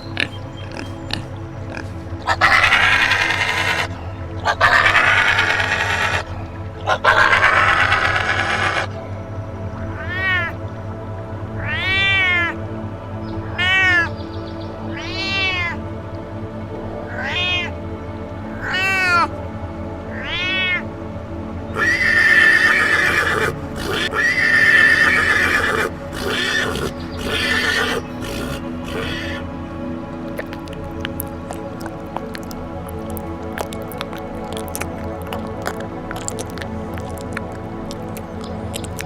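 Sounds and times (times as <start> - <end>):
animal calling: 0.0 - 9.0, 9.9 - 10.6, 11.6 - 12.6, 13.4 - 14.1, 14.9 - 15.8, 17.0 - 17.7, 18.5 - 19.3, 20.1 - 20.8, 21.8 - 29.6, 30.2 - 39.0
background music: 0.0 - 39.0.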